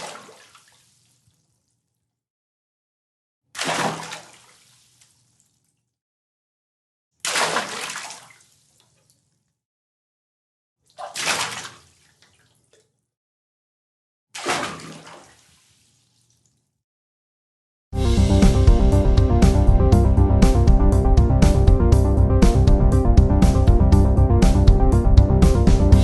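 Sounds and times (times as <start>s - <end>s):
water splashing into water: 0.0s - 1.1s, 3.6s - 5.1s, 7.2s - 8.6s, 10.9s - 12.9s, 14.4s - 16.1s
water sloshing and dripping: 0.0s - 2.0s, 3.6s - 6.0s, 7.2s - 9.4s, 10.8s - 13.1s, 14.4s - 16.8s.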